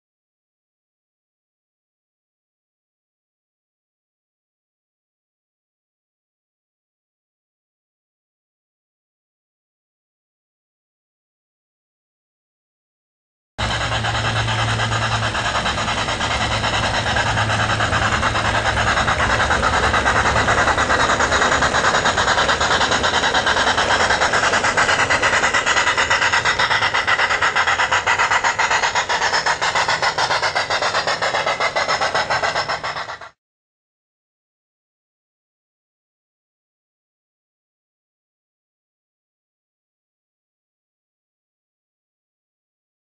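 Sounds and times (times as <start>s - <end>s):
low hum: 13.6s - 28.6s
model train clattering on track: 13.6s - 33.4s.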